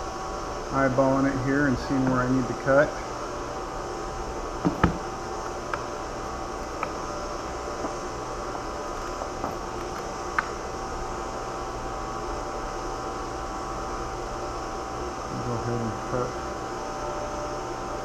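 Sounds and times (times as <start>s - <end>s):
steady hum: 0.0s - 18.0s.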